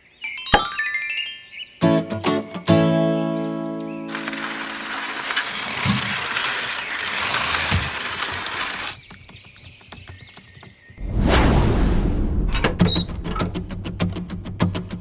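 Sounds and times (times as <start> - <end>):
thin high tone: 0.2 - 1.9
loud low rumble: 11.0 - 13.9.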